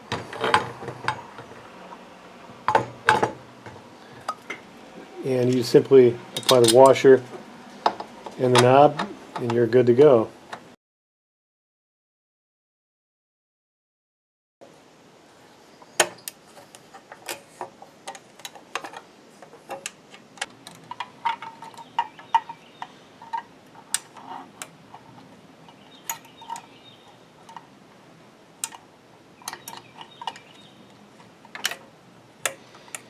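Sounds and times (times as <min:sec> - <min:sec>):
metal parts and tools clinking: 0:06.3 - 0:07.1.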